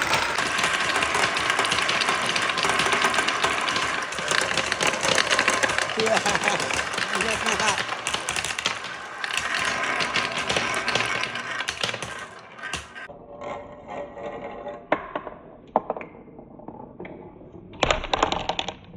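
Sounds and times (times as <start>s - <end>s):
marbles rolling on wood: 0.0s - 13.1s, 18.0s - 18.8s.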